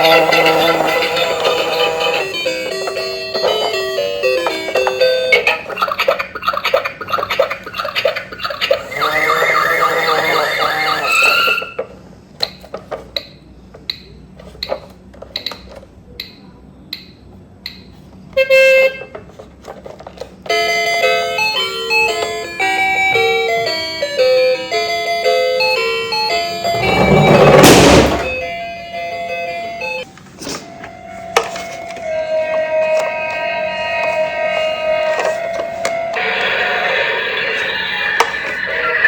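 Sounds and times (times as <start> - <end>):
tinny toy melody: 20.5 - 30.1
pitched rhythmic electronic passage: 26.4 - 28.8
loud burst of noise: 26.8 - 28.5.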